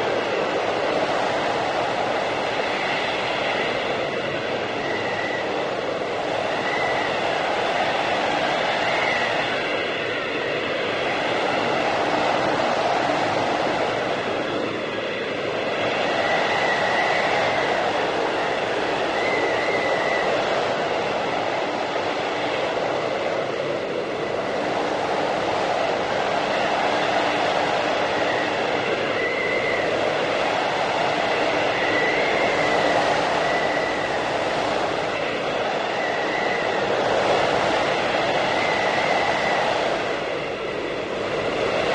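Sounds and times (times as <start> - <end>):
blizzard wind rushing: 0.0 - 41.9
faint high wind whistle: 0.0 - 41.9.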